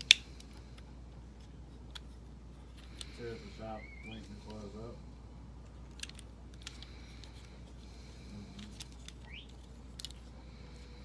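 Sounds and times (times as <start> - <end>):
steady low hum: 0.0 - 11.0
plastic toy clicks: 5.9 - 6.9, 8.6 - 10.2.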